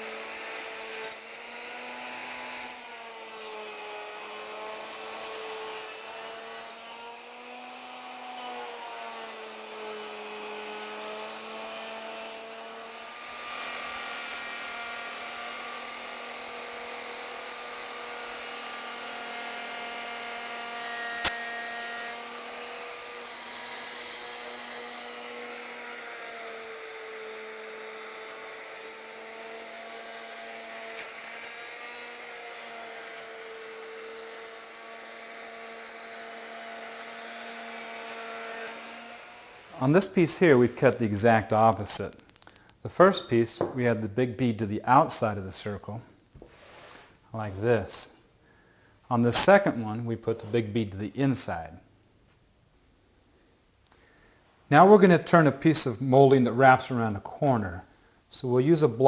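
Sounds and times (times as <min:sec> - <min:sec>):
router whining: 0:00.0 - 0:41.0.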